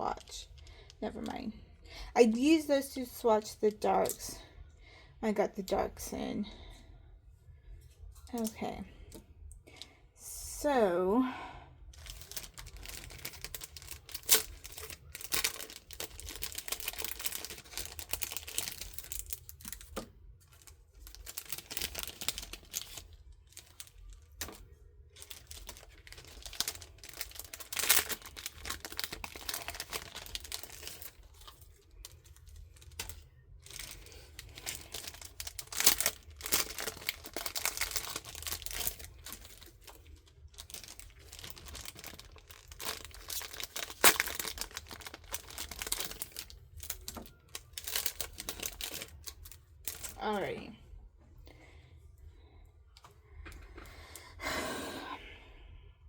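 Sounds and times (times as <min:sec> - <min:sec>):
plastic packaging crinkling: 0:11.9 - 0:50.5.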